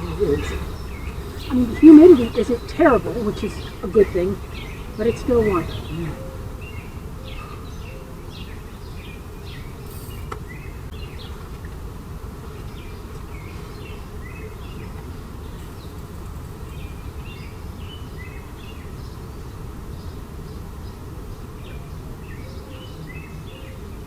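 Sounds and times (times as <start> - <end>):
steady low rumble: 0.0 - 9.8
birds chirping: 0.0 - 24.0.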